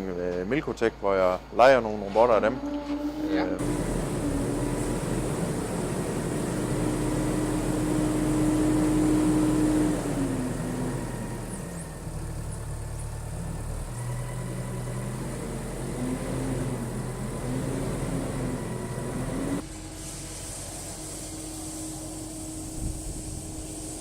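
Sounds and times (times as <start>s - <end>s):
engine running: 3.6s - 20.0s.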